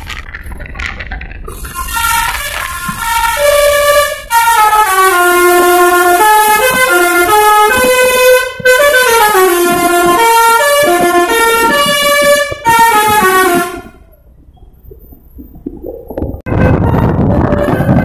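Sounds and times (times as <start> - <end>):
multi-trumpet bus horn tune: 1.7 - 14.0, 16.5 - 18.0.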